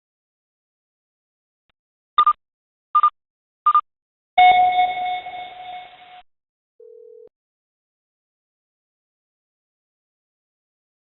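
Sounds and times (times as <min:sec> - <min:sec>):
electronic double beeps: 0:04.4 - 0:06.2.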